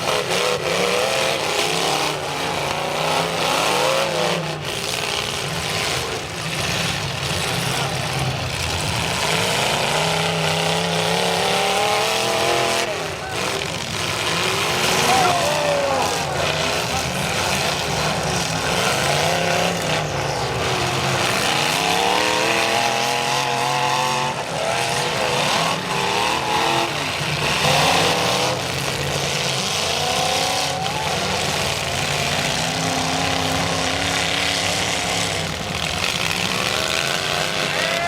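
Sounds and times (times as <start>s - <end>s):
engines revving: 0.0s - 38.0s.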